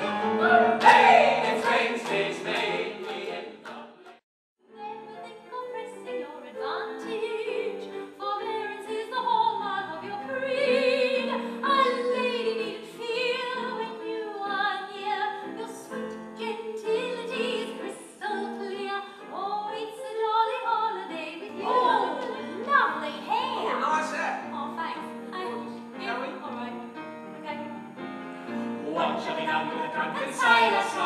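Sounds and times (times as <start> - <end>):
woman singing operatically: 4.8 - 23.8.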